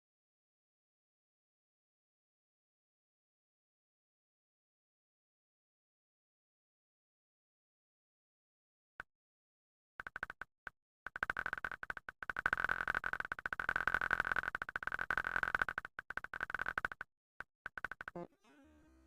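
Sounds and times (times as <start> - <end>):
rapid repeated fart sound buzz: 11.1 - 19.0.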